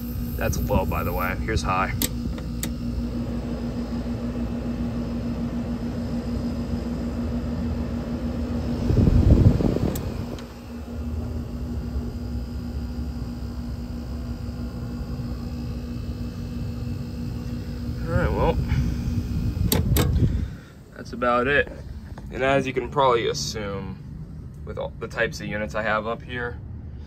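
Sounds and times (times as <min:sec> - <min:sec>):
air conditioner humming: 0:00.0 - 0:27.0
air conditioner rumble: 0:00.0 - 0:27.0
air conditioner click: 0:01.8 - 0:02.9, 0:09.4 - 0:10.6, 0:19.6 - 0:20.4.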